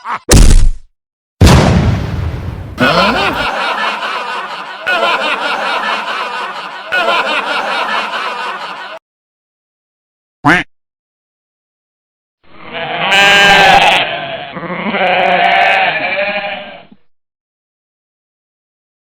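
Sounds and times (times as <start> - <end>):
sheep bleating: 2.8 - 3.5, 12.5 - 16.9.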